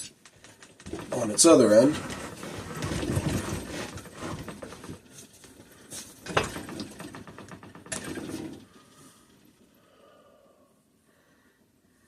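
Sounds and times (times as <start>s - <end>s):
metal engine parts clunking: 0.5s - 9.6s.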